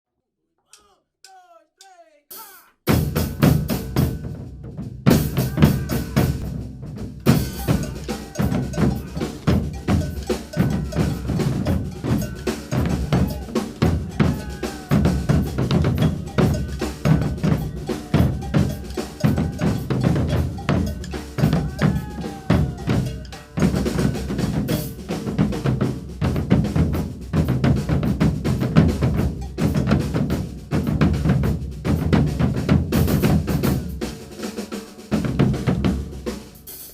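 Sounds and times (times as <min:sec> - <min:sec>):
percussion ensemble drumming: 0:00.8 - 0:36.9
bell rhythm: 0:05.1 - 0:06.5, 0:07.2 - 0:25.8, 0:29.0 - 0:30.3.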